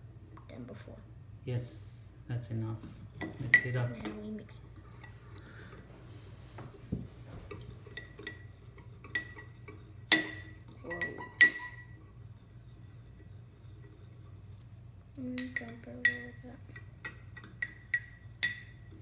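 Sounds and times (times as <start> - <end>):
spoon clinking against a bowl: 3.2 - 4.2, 7.3 - 19.0.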